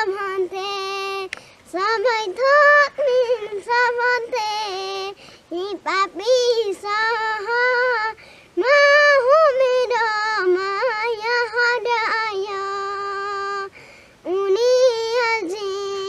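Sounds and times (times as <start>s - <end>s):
girl singing: 0.0s - 16.0s
breath: 1.4s - 1.7s, 5.2s - 5.5s, 8.2s - 8.6s, 13.7s - 14.2s.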